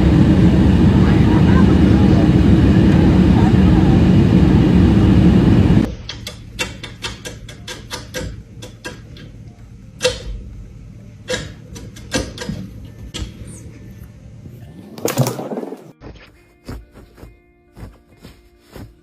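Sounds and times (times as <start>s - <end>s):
loud rushing noise: 0.0s - 5.9s
sharp clicks and taps: 6.0s - 9.3s.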